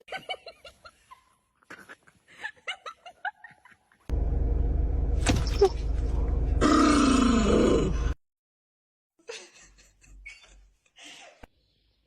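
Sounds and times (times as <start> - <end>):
low hum: 4.1 - 8.2.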